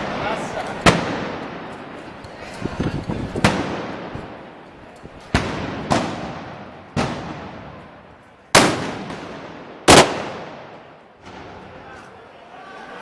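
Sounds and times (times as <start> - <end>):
loud gunpowder bangs with echo: 5.4 - 7.8, 8.6 - 11.4.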